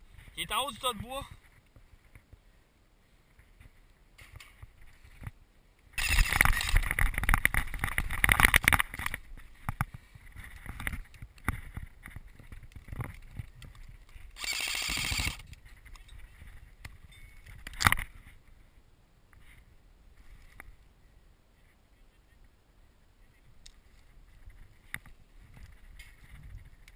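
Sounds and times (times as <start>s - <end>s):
airsoft rifle firing full auto: 14.4s - 15.4s.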